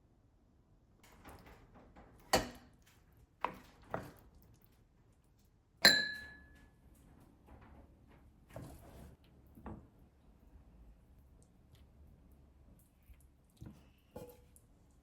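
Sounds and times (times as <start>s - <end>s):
dishes and utensils clattering: 5.8s - 6.5s
ringing clink: 5.8s - 6.5s.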